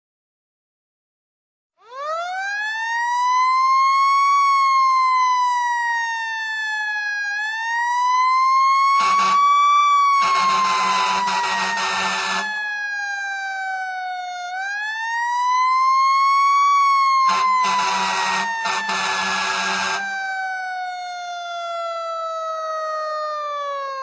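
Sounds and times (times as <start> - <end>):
mechanical siren wailing: 1.8 - 24.0
low harsh horn blasts: 9.0 - 9.5, 10.2 - 12.6, 17.3 - 20.1.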